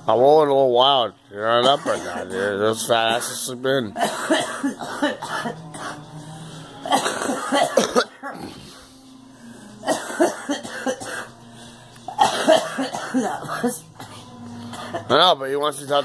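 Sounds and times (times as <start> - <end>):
girl coughing: 1.6 - 2.4, 4.0 - 6.0, 6.9 - 8.5, 9.8 - 11.3, 12.1 - 15.1.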